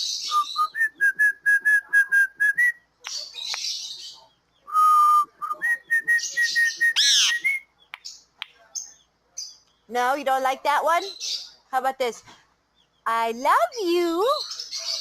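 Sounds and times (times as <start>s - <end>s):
parakeet squawking: 7.0s - 7.4s.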